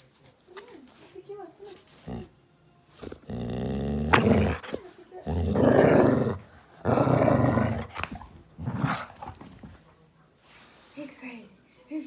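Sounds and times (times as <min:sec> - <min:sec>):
dog growling playfully: 0:02.0 - 0:02.4, 0:03.0 - 0:09.8.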